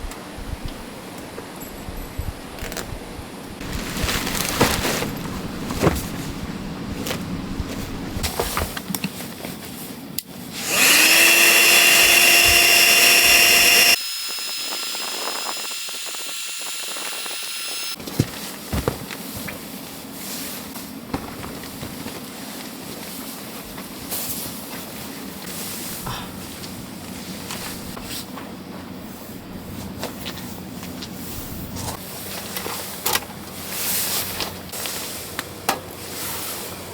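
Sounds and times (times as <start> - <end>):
small electric motor running: 10.6 - 18.0.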